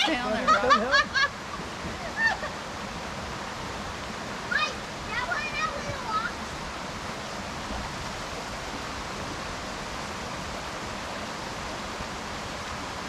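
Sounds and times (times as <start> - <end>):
creek rushing water: 0.0 - 13.0.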